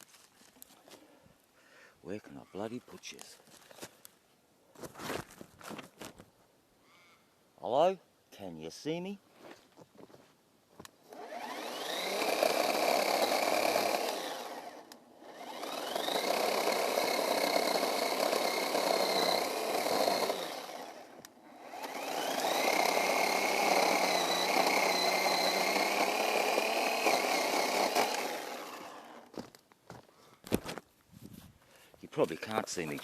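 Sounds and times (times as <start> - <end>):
battery chainsaw whining: 11.0 - 29.4
chain cutting through wood: 11.1 - 29.4.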